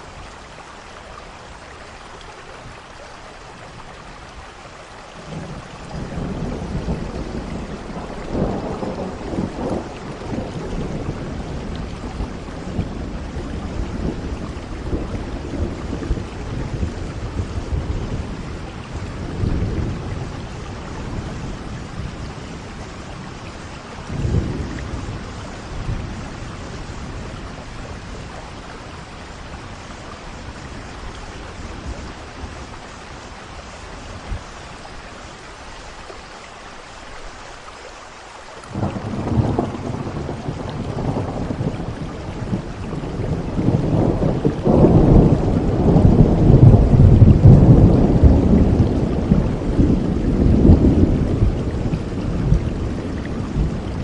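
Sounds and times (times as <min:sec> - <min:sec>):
steady rain falling: 0:00.0 - 0:54.0
distant thunder rolling: 0:05.3 - 0:35.0, 0:38.7 - 0:54.0.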